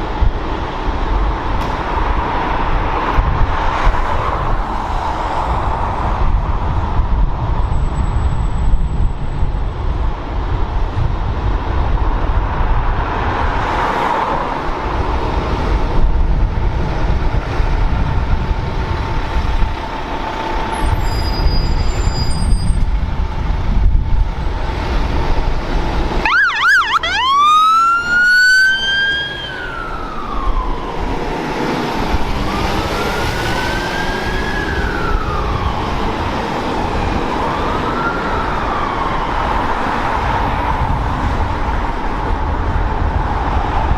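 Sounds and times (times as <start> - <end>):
road traffic: 0.0 - 43.9
fire engine siren wailing: 26.1 - 41.4.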